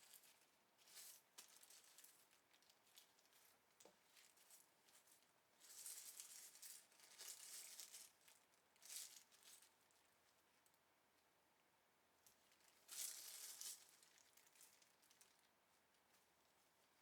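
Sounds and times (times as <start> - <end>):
packaging crinkling and rustling: 5.7 - 10.0, 12.8 - 15.5.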